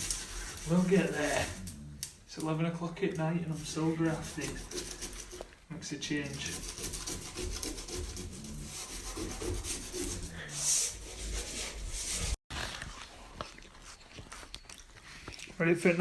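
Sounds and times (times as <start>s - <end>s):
hand tool scraping a wall: 0.0s - 1.6s, 3.4s - 12.4s.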